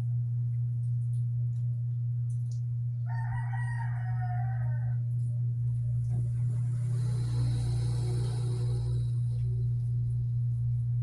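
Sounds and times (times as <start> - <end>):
low steady hum: 0.0 - 11.0
rooster crowing: 3.0 - 5.1.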